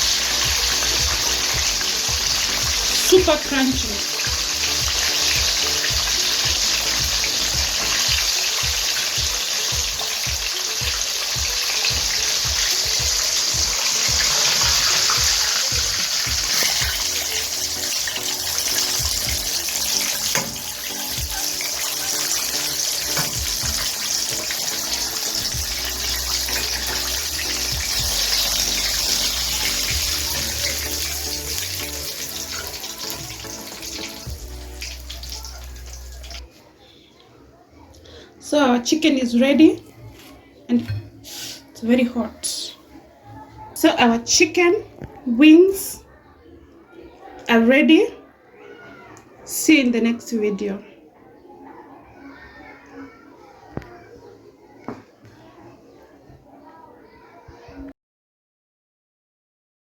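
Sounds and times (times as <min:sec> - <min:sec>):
background music: 0:00.0 - 0:36.5
chicken wings deep-frying in oil: 0:00.0 - 0:36.5.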